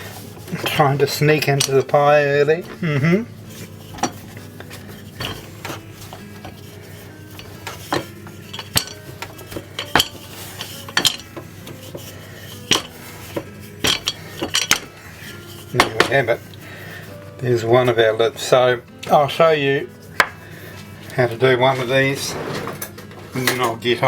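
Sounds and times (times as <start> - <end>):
utensils knocking on wooden board: 0.0 - 2.8, 3.5 - 16.4, 20.2 - 20.4.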